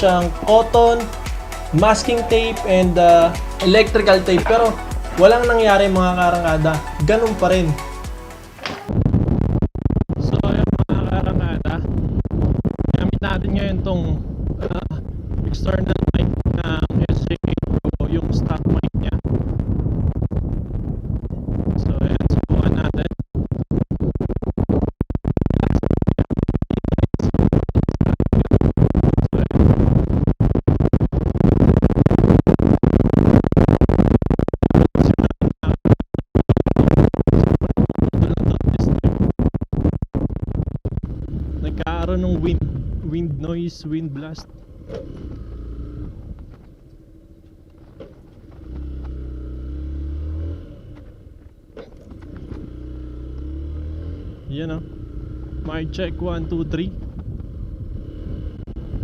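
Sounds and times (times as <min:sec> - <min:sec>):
motorcycle engine running: 0:00.0 - 0:09.0, 0:41.0 - 0:43.5, 0:44.4 - 0:59.0
wind rumble on microphone: 0:08.9 - 0:49.0, 0:54.2 - 0:59.0
wind buffeting microphone: 0:41.0 - 0:43.4, 0:56.9 - 0:59.0.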